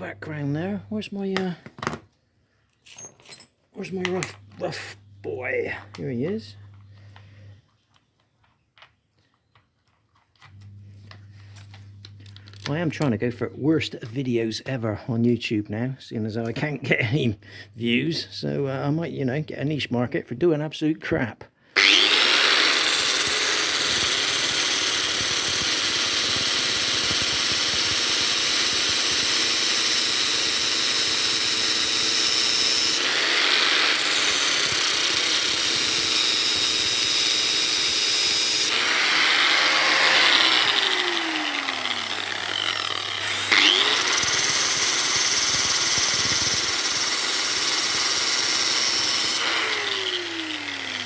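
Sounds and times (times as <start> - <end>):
power sander grinding steel: 21.8 - 51.0
motor spinning down whine: 36.4 - 51.0.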